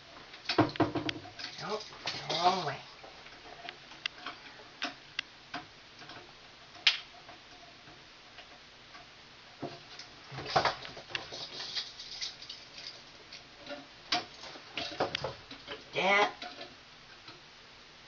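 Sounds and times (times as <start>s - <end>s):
wire rustling: 9.7s - 17.4s.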